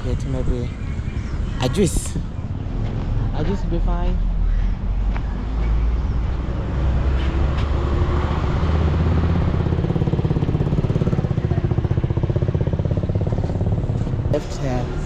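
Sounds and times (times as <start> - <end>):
vehicle engine running: 8.7 - 15.0.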